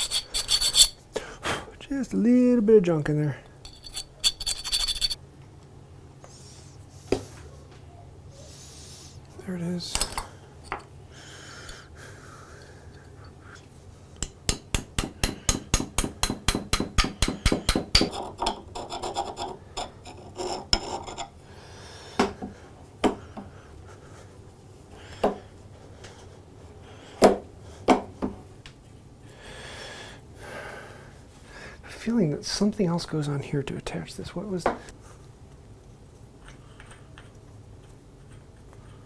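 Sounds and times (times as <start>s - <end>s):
scraping on metal: 0.0s - 1.0s, 3.6s - 5.2s.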